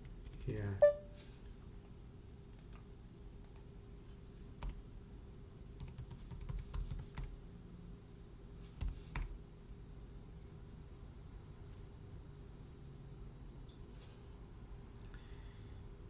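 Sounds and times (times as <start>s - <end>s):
faint steady hum: 0.0s - 16.0s
keyboard typing: 5.8s - 7.4s.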